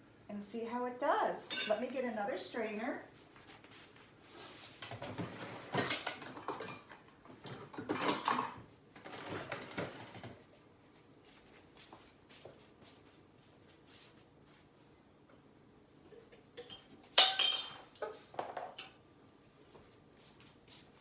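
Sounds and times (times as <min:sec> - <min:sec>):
kitchen clattering and rustling: 0:01.5 - 0:01.9, 0:04.6 - 0:10.5, 0:16.1 - 0:19.0.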